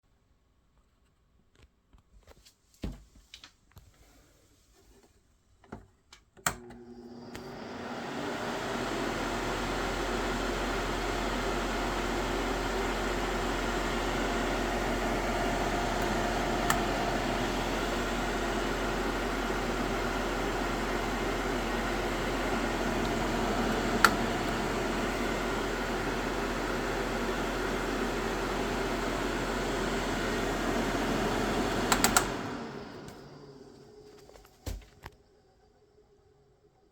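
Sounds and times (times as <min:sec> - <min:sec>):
hair dryer fan humming: 0:06.5 - 0:34.2.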